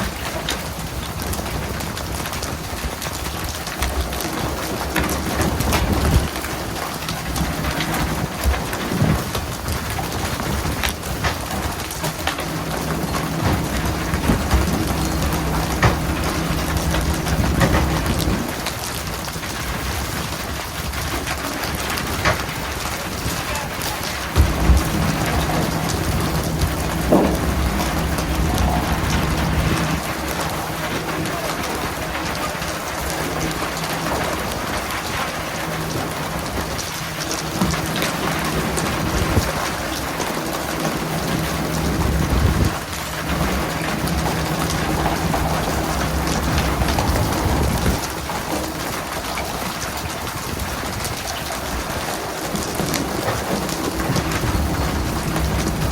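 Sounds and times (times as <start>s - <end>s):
boat engine hum: 0.0s - 55.9s
water splashing and spraying: 0.0s - 55.9s
sharp knocks: 24.4s - 30.0s.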